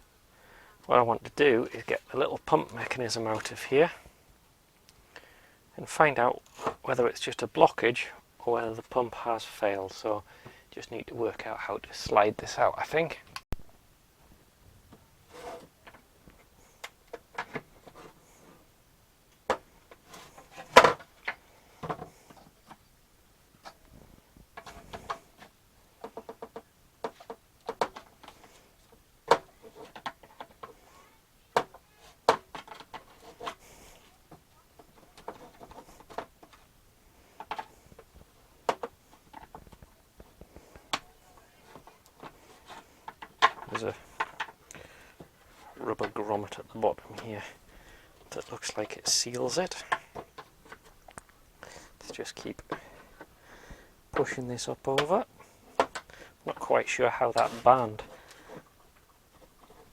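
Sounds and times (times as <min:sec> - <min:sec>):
plastic clicks and rattles: 0:29.2 - 0:30.8.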